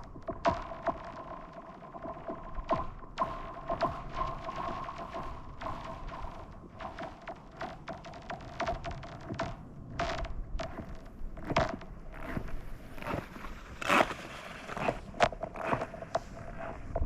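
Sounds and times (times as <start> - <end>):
skate blades scraping on ice: 12.3 - 16.9.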